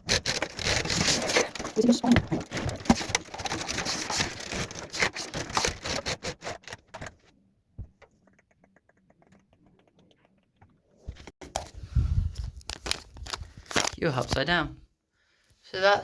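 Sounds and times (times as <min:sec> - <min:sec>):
wire figure clicking and scraping: 0:00.0 - 0:07.2, 0:08.0 - 0:11.6.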